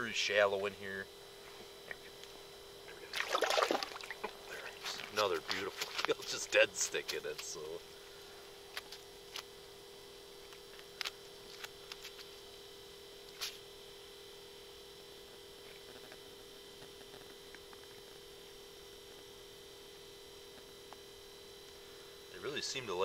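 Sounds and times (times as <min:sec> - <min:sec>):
electronic hum with two tones: 0:00.0 - 0:23.0.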